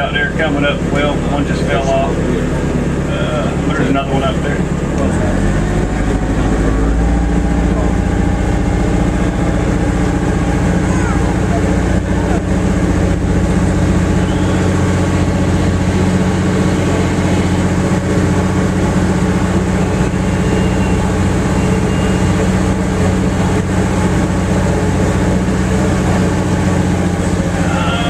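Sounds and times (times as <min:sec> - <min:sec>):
boat motor humming: 0:00.0 - 0:28.0.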